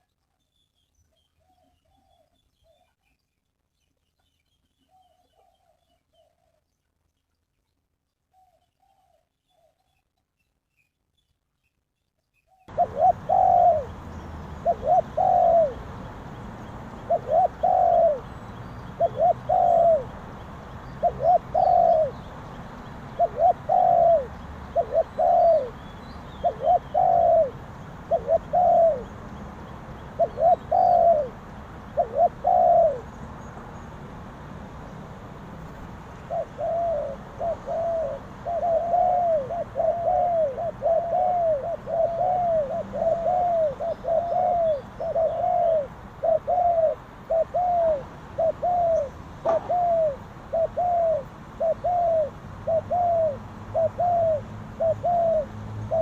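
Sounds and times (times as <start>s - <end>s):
dove cooing: 12.7s - 16.1s, 16.9s - 22.3s, 23.1s - 25.8s, 26.4s - 29.2s, 30.1s - 33.1s, 36.2s - 56.0s.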